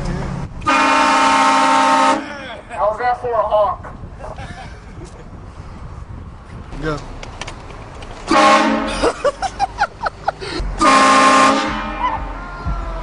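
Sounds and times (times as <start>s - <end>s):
train horn blasting: 0.6s - 2.3s, 8.3s - 8.9s, 10.8s - 12.4s.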